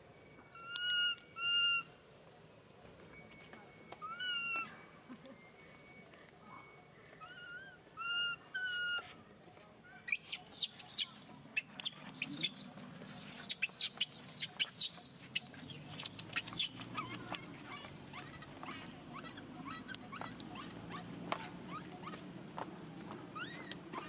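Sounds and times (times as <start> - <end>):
monkey calling: 0.6 - 1.9, 4.0 - 4.8, 7.2 - 9.1, 10.0 - 22.3, 23.3 - 24.0
monkey squealing and chirping: 7.2 - 9.0, 10.0 - 22.2, 23.4 - 24.0.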